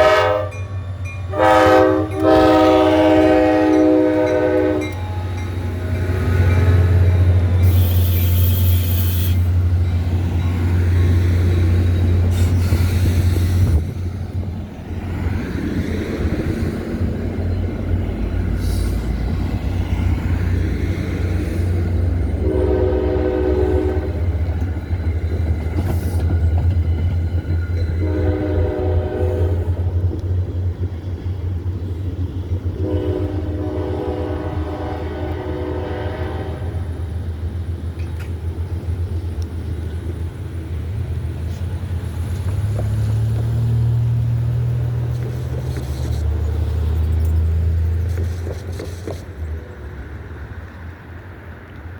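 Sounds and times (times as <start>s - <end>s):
train horn blasts: 0.0s - 9.5s, 22.3s - 24.3s, 27.9s - 29.8s, 32.8s - 37.1s
wind rumble on microphone: 12.5s - 17.5s.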